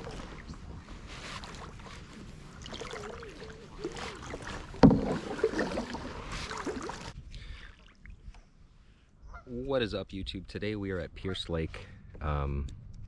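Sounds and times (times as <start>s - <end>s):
paddle splashing water: 0.0s - 8.3s.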